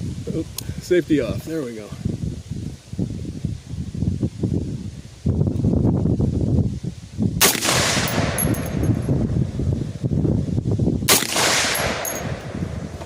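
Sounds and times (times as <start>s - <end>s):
rifle shots with echo: 7.4s - 8.8s, 11.1s - 12.8s
constant low rumble: 7.4s - 13.0s.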